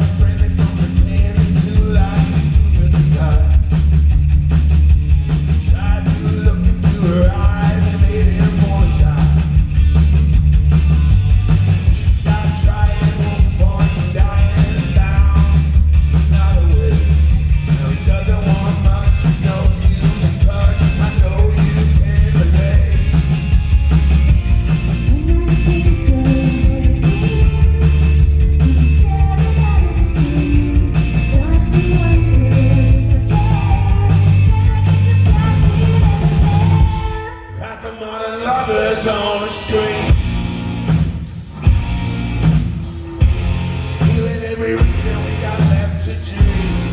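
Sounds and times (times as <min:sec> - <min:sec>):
rock band playing live: 0:00.0 - 0:37.5, 0:39.0 - 0:46.9
person singing: 0:25.0 - 0:40.2.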